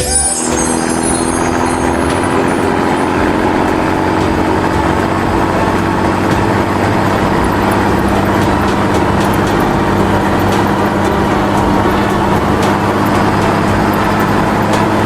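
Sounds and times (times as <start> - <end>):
truck engine rumbling: 0.0 - 15.0.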